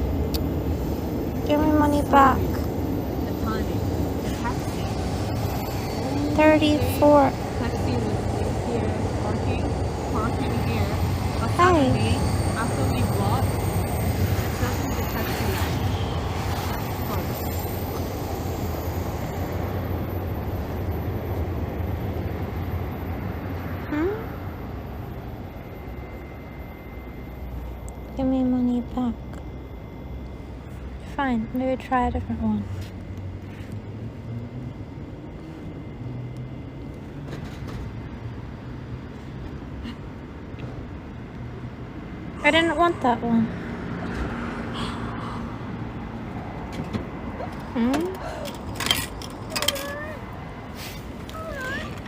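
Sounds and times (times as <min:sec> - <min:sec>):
city traffic rumble: 0:00.0 - 0:52.0
faint high tone: 0:23.7 - 0:24.7.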